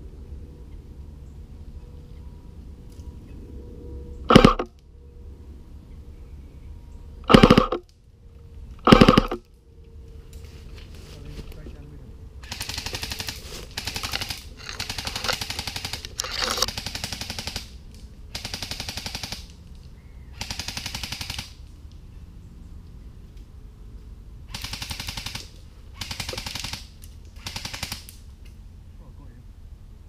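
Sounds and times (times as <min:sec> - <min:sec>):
airsoft guns firing bursts: 0:04.3 - 0:04.6, 0:07.3 - 0:07.8, 0:08.8 - 0:09.4, 0:12.4 - 0:16.1, 0:16.7 - 0:19.6, 0:20.4 - 0:21.6, 0:24.5 - 0:28.2.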